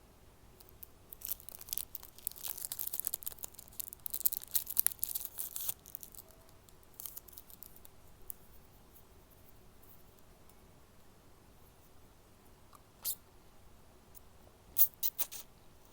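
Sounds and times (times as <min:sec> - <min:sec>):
crinkling handling noise: 0:00.6 - 0:08.7.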